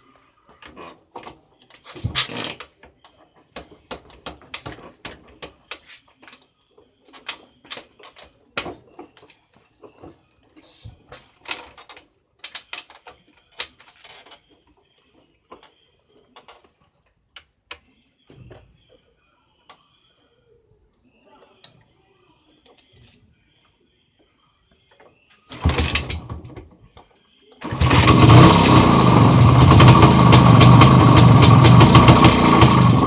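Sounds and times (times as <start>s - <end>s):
metal motorcycle parts clicking: 11.2s - 14.7s, 15.5s - 17.9s.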